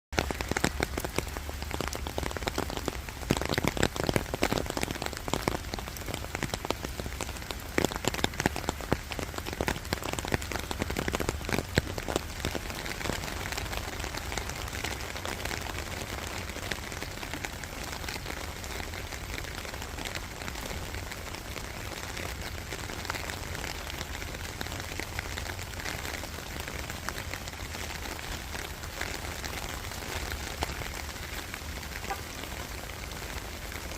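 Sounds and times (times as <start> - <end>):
rain pattering on a surface: 0.1 - 33.9.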